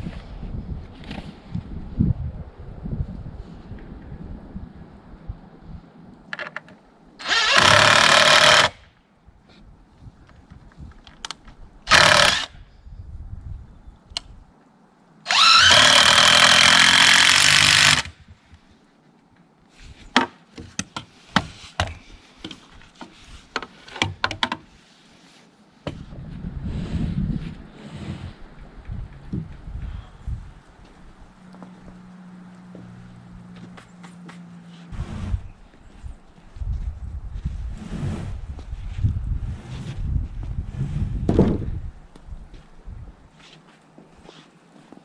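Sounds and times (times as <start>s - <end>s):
power drill running: 7.2s - 8.8s, 11.9s - 12.5s, 15.3s - 18.1s
sharp knocks and clicks: 23.6s - 24.6s.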